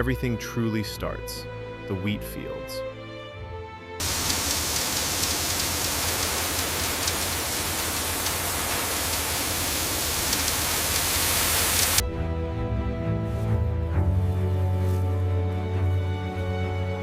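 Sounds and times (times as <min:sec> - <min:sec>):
loud steady rushing noise: 0:04.0 - 0:12.0
low hum: 0:04.0 - 0:12.0.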